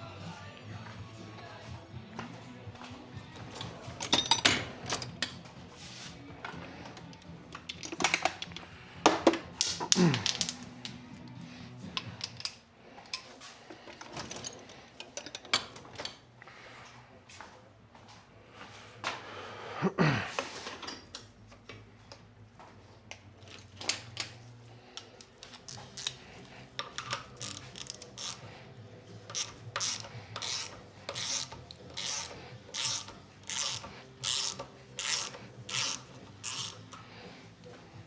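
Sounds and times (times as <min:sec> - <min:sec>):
ratchet wrench clicking: 0:23.5 - 0:37.3.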